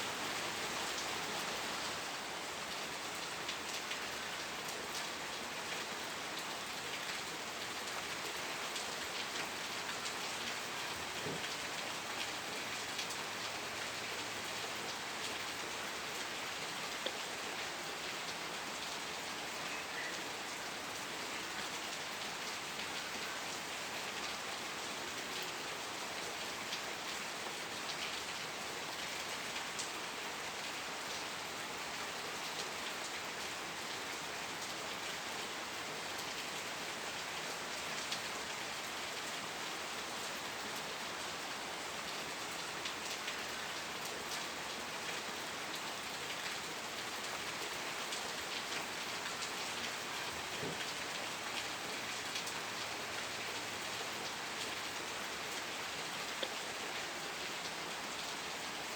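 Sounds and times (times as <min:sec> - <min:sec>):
steady rain hiss: 0:00.0 - 0:58.9.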